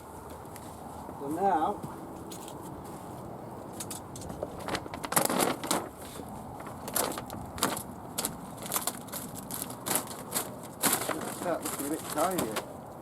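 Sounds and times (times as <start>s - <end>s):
plastic sheeting crackling: 4.3s - 13.0s.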